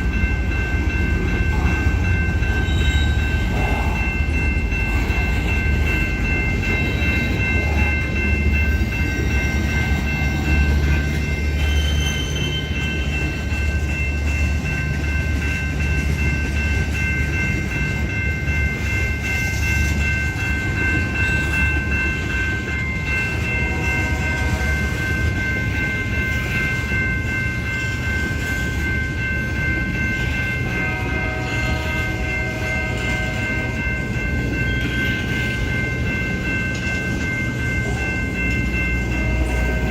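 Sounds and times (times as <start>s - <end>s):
freight train rumbling: 0.0s - 39.9s
high-pitched train horn tones: 30.6s - 33.7s, 39.2s - 39.9s.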